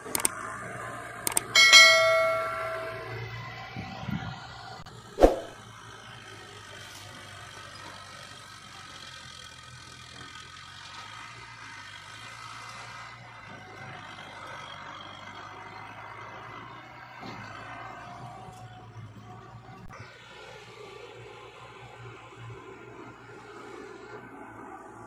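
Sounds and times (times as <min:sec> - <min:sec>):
diesel machinery running: 0:00.0 - 0:25.0
loud metallic clank: 0:01.5 - 0:03.3.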